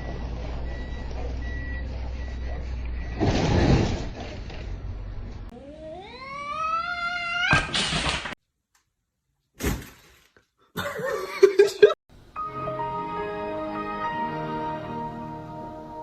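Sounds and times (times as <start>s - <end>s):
cat yowling: 5.6s - 7.7s
wavering cat cries: 5.6s - 7.7s
music: 12.2s - 16.0s.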